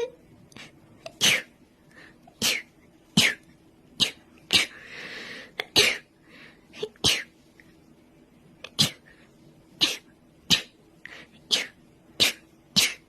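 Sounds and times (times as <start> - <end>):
breathy in-breath: 4.7 - 5.6
woman sneezing: 11.5 - 13.0.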